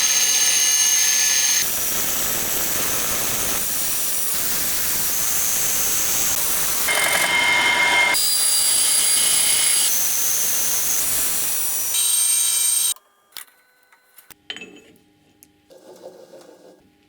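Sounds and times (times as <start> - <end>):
power tool whining: 0.0 - 13.0.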